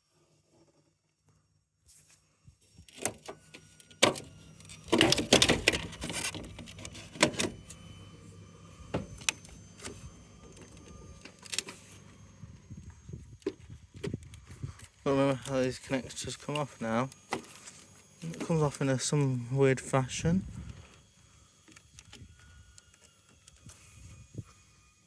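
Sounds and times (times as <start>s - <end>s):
faint steady hum: 0.0s - 25.0s
tools and parts clattering: 2.9s - 7.8s.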